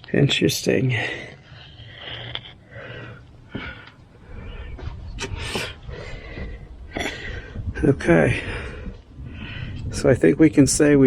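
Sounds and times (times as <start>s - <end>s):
person breathing heavily: 0.9s - 9.9s
wind rumble on microphone: 4.3s - 11.0s.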